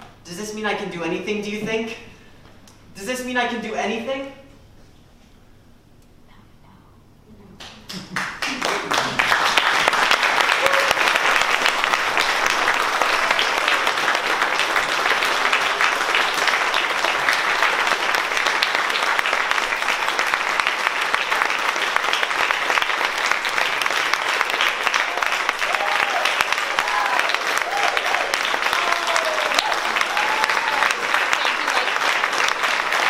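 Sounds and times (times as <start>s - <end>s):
audience applauding: 7.9s - 33.0s.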